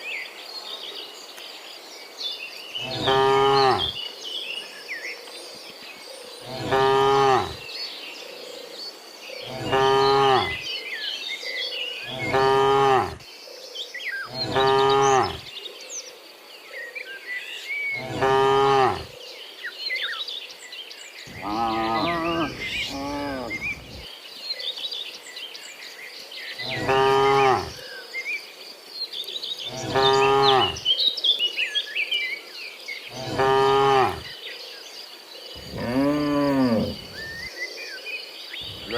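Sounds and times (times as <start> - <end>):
small birds chirping: 0.6 - 13.2, 13.8 - 16.1, 16.8 - 38.9
cattle mooing: 12.1 - 13.2, 14.4 - 15.4, 18.0 - 19.1, 21.3 - 24.0, 33.2 - 34.2, 35.6 - 37.5, 38.6 - 38.9
insects buzzing: 21.3 - 24.1, 35.4 - 37.5, 38.6 - 38.9.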